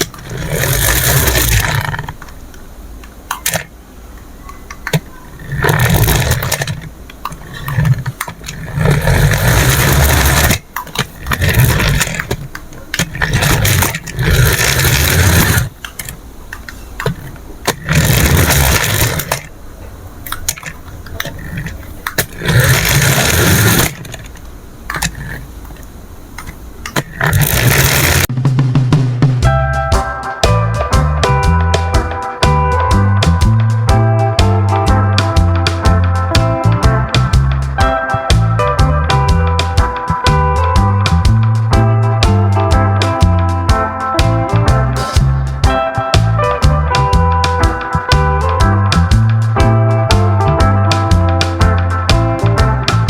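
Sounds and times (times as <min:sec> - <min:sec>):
toy vehicle motor running: 0:00.0 - 0:02.3, 0:03.3 - 0:03.7, 0:04.8 - 0:16.2, 0:17.1 - 0:19.5, 0:20.4 - 0:25.5, 0:26.9 - 0:28.3.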